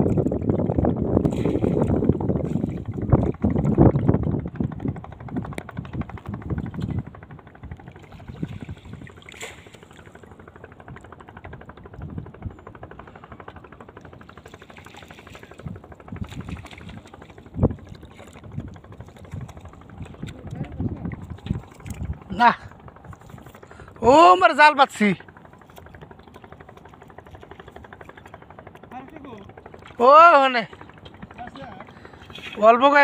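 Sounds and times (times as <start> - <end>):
wind on the microphone: 0.0 - 9.3, 15.4 - 24.2
water around a small boat: 0.0 - 33.0.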